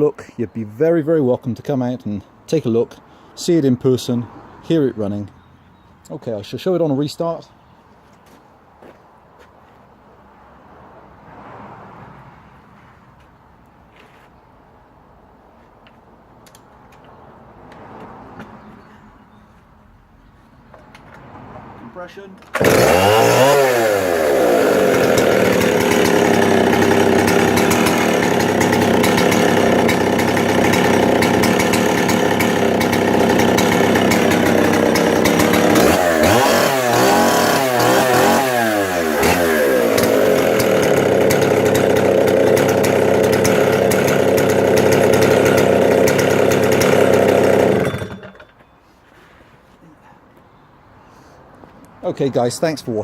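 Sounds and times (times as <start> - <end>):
chainsaw engine revving and idling: 22.6 - 48.4.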